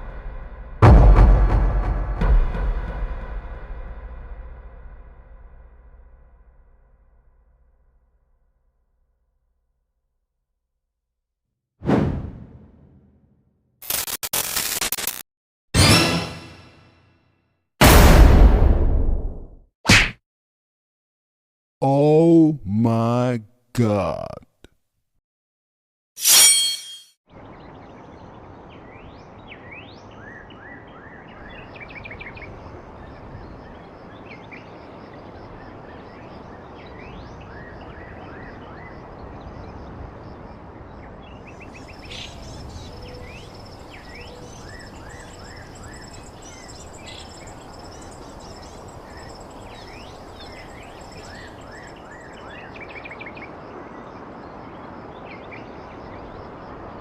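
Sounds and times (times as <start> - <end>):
small birds chirping: 27.4 - 56.6.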